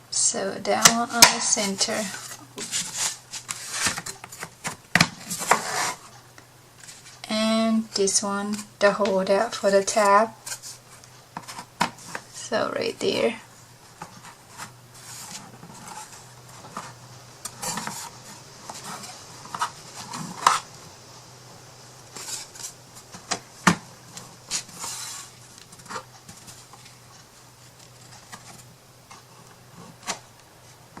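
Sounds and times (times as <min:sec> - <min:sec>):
wooden pieces scraping: 0:00.9 - 0:06.2, 0:13.9 - 0:20.8, 0:22.1 - 0:30.8.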